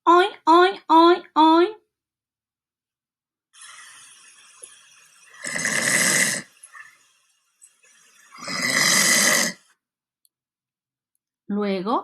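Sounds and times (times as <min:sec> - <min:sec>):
dog snoring: 0:05.3 - 0:06.9, 0:08.3 - 0:09.8.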